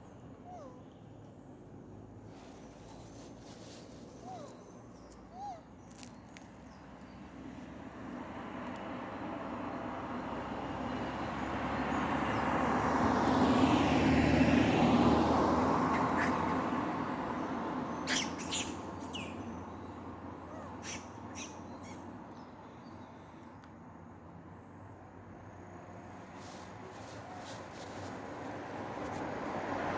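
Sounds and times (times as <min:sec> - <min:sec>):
vehicle passing by: 0:06.8 - 0:22.3, 0:24.3 - 0:29.9
high chirping calls: 0:18.0 - 0:19.8, 0:20.5 - 0:22.1.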